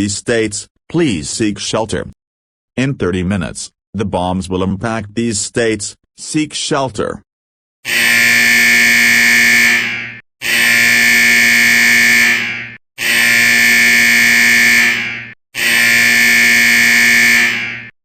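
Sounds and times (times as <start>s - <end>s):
harsh electronic alarm buzz: 7.8s - 18.0s.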